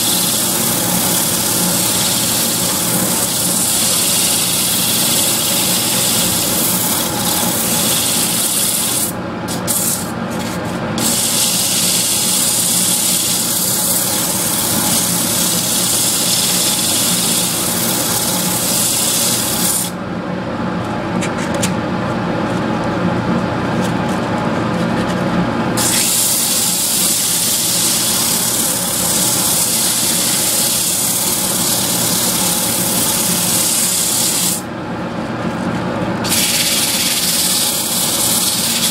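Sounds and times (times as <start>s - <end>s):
lathe motor running: 0.0s - 9.2s
cutting tool rasping hiss: 0.0s - 10.0s, 11.0s - 19.9s, 25.8s - 34.6s, 36.2s - 38.9s.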